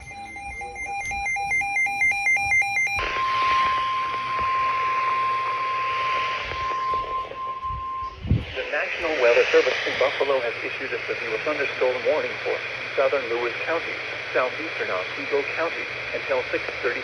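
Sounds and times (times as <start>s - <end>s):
steady warning alarm tone: 0.0s - 12.4s
pulsing buzzy data tones: 0.0s - 15.6s
radio static: 0.0s - 17.0s.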